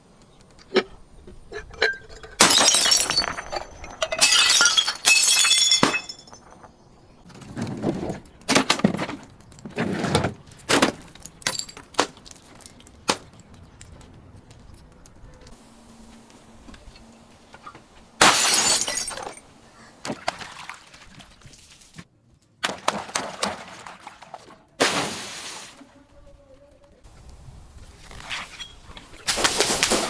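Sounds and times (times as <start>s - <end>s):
glass crunching impacts: 1.6s - 6.8s, 8.4s - 13.5s, 18.2s - 19.5s, 28.0s - 30.0s
glass bottles shattering: 1.7s - 6.6s, 11.2s - 11.9s, 18.2s - 19.4s.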